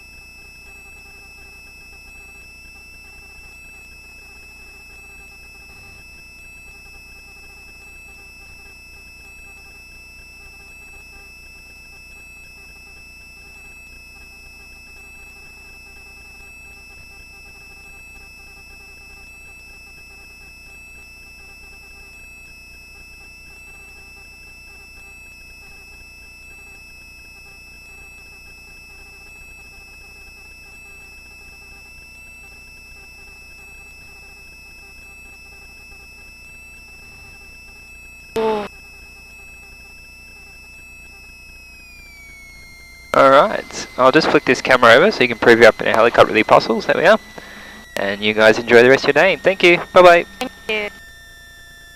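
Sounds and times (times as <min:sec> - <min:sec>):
helicopter high-pitched whine: 0:42.0 - 0:51.0.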